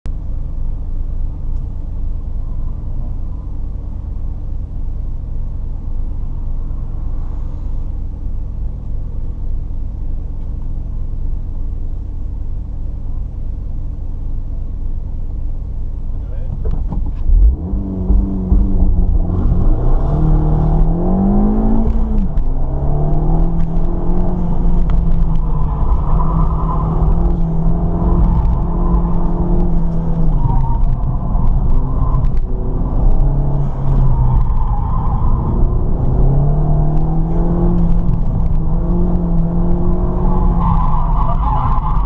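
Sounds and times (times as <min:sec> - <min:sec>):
car engine revving hard: 0:17.2 - 0:30.2.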